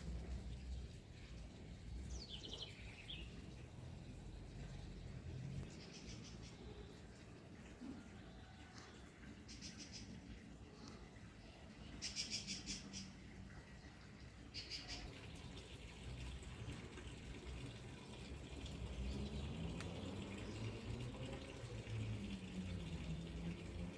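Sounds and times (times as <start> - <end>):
low steady background rumble: 0.0 - 23.9
birds calling: 8.0 - 15.2.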